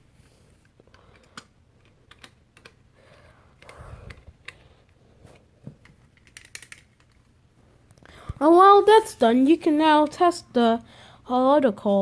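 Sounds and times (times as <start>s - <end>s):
plastic and metal parts clicking: 0.8s - 2.8s, 5.8s - 7.3s.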